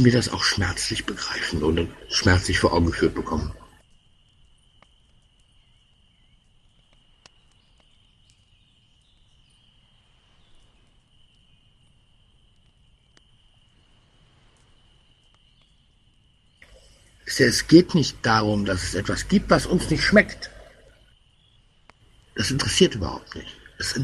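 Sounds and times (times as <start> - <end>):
faint clicks: 3.5 - 17.3, 19.2 - 24.0
high-pitched whine: 16.6 - 21.1.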